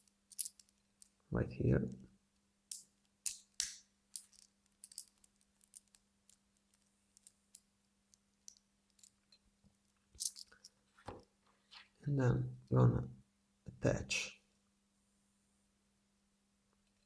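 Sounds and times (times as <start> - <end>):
small metallic clicks and scrapes: 0.0 - 1.2, 2.7 - 11.9.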